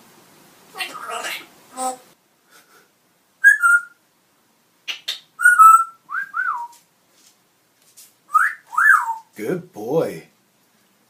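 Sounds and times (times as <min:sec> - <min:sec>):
parrot whistling: 0:03.4 - 0:04.0, 0:04.9 - 0:06.8, 0:08.3 - 0:09.3.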